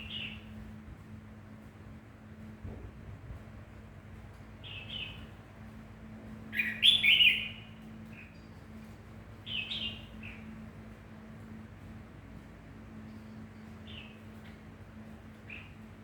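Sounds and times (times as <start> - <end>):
pet bird chirping: 6.6 - 7.6.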